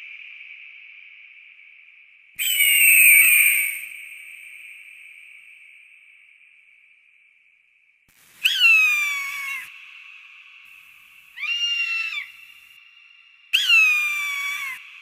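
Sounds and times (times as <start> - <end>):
short flat hawk call: 8.4 - 9.7, 11.4 - 12.4.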